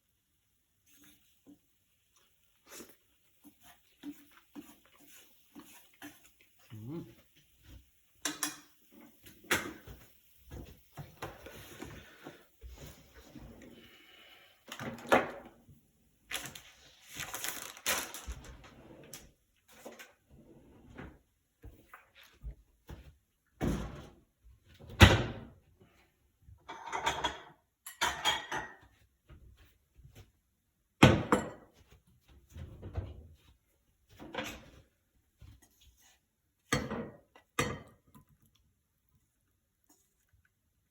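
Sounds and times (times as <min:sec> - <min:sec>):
kitchen knocks and clatters: 0:07.6 - 0:13.5, 0:22.9 - 0:25.6, 0:26.5 - 0:30.2, 0:31.0 - 0:33.5, 0:36.6 - 0:38.4.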